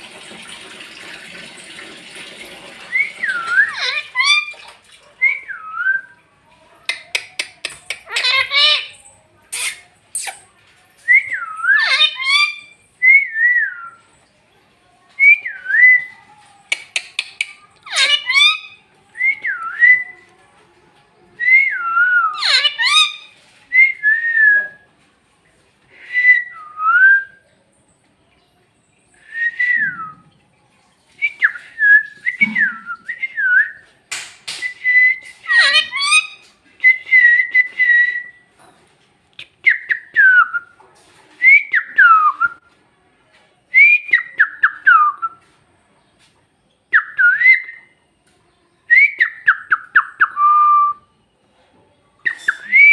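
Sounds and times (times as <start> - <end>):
parrot whistling: 2.9 - 4.5, 8.0 - 9.0, 11.2 - 12.7, 16.9 - 20.1, 21.8 - 23.3, 34.6 - 38.3, 52.3 - 52.9
parrot squawks: 3.3 - 4.5, 7.6 - 9.0, 11.8 - 12.7, 16.7 - 18.8, 22.4 - 23.3, 35.4 - 36.4.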